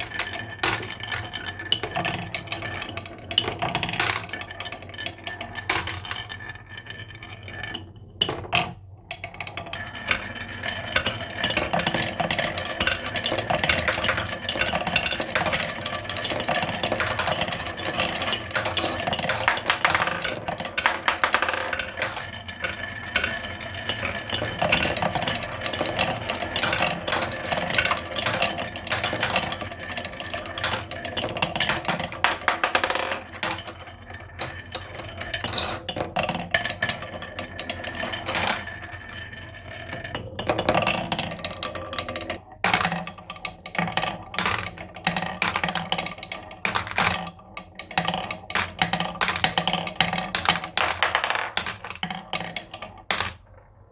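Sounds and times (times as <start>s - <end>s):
marbles clacking on wooden run: 0.0s - 6.4s, 8.2s - 53.6s.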